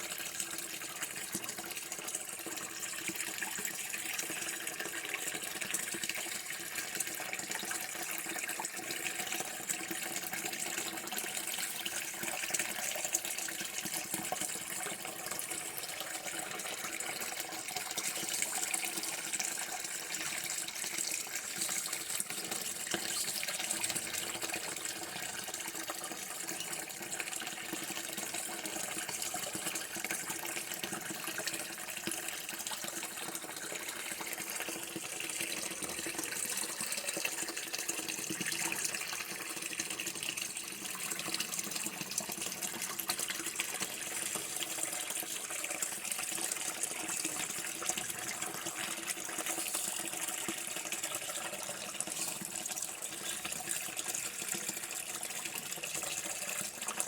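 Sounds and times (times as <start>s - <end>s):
tap water running: 0.0s - 57.0s.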